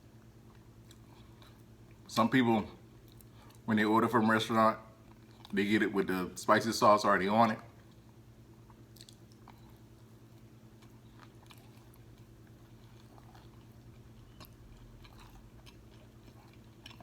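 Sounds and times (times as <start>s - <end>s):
crunches of chewing: 0.4s - 2.1s, 5.0s - 5.6s, 7.8s - 17.0s.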